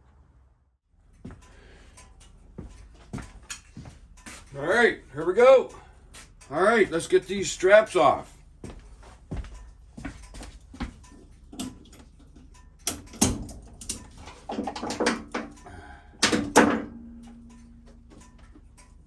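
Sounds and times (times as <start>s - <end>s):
low steady hum: 0.0s - 19.0s
ratchet straps clicking and clanking: 1.0s - 19.0s.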